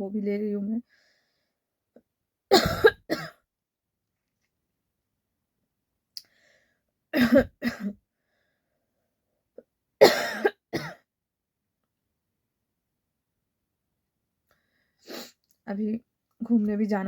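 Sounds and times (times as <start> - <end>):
woman coughing: 2.5 - 3.4, 7.2 - 8.0, 10.0 - 11.0.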